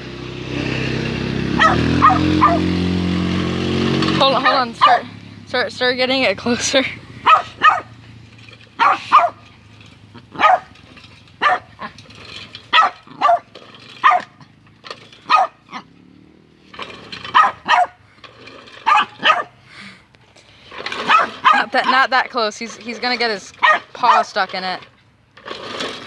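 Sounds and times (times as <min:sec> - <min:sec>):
lawnmower engine hum: 0:00.0 - 0:26.0
small dog barking: 0:01.6 - 0:02.7, 0:04.4 - 0:05.1, 0:07.2 - 0:07.9, 0:08.8 - 0:09.4, 0:10.3 - 0:10.7, 0:11.4 - 0:11.9, 0:12.7 - 0:14.4, 0:15.3 - 0:15.8, 0:17.3 - 0:18.0, 0:18.8 - 0:19.6, 0:21.1 - 0:21.7, 0:23.6 - 0:24.2.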